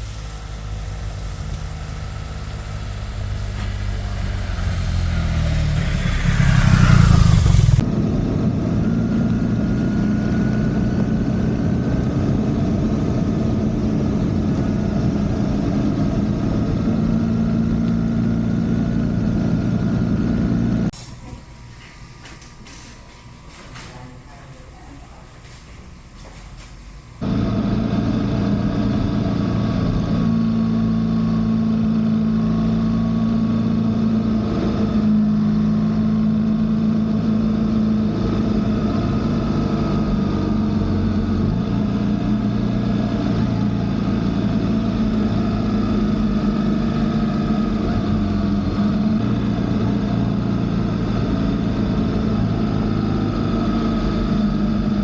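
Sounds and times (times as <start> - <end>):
rushing noise: 0.0 - 10.9
motorcycle engine running: 0.0 - 21.5, 27.0 - 55.0.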